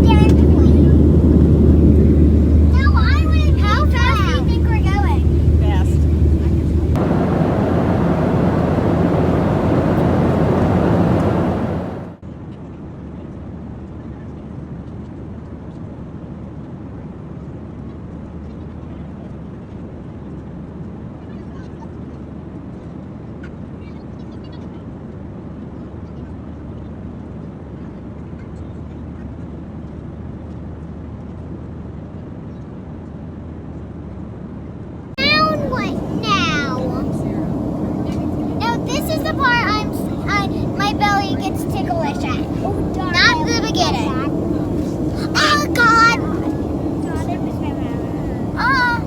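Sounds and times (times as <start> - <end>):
airliner cabin rushing noise: 0.0 - 12.2, 35.2 - 49.0
jet engines droning: 0.0 - 12.2, 35.2 - 49.0.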